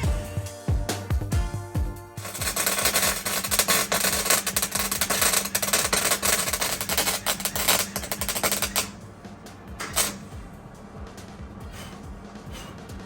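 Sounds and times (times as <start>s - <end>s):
welding arc crackling: 2.2s - 10.6s.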